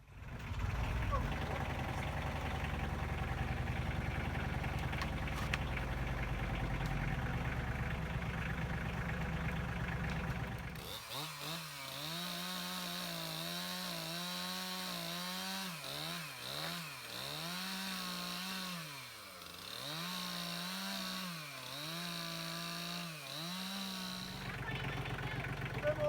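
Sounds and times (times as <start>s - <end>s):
chainsaw cutting wood: 10.1s - 26.0s.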